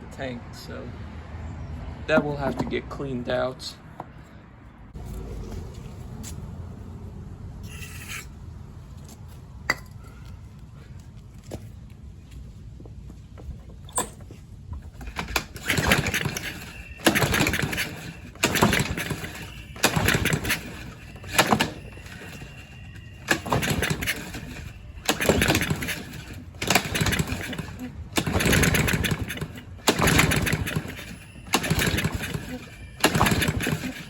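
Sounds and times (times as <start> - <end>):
lawn mower pull cord cranking: 14.9 - 34.0.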